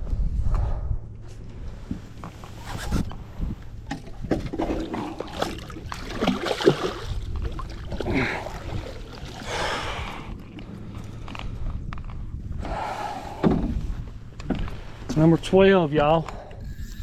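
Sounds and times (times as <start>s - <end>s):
water splashing around a boat: 2.4s - 11.3s.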